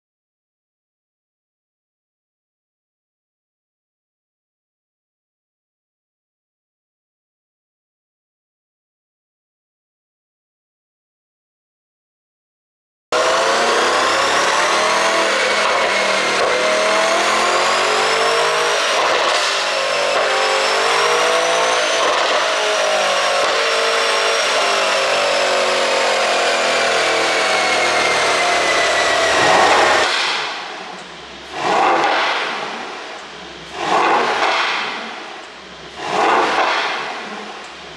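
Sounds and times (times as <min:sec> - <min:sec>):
car engine revving: 0:13.1 - 0:37.9.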